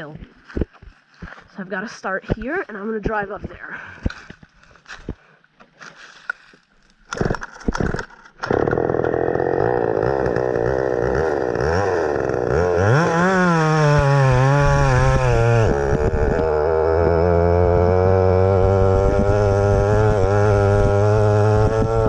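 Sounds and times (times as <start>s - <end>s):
two-stroke minibike engine revving: 7.1s - 22.0s.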